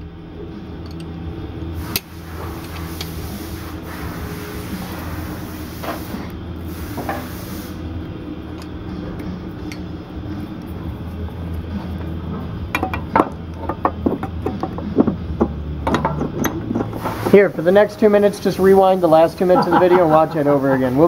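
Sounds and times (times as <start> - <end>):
low machine hum: 0.0 - 21.0
hand tools and metal clinking: 0.8 - 1.2, 1.8 - 3.4, 8.4 - 17.4
high hiss: 1.8 - 8.1, 16.9 - 21.0.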